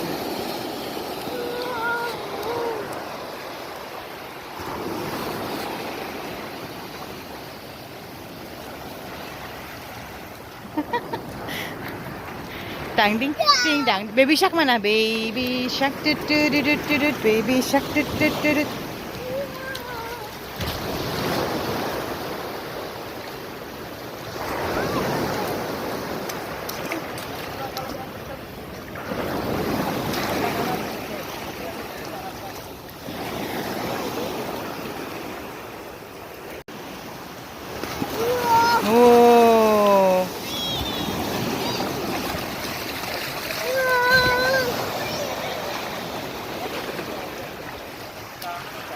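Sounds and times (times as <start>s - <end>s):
sea surf washing onto beach: 0.0s - 48.9s.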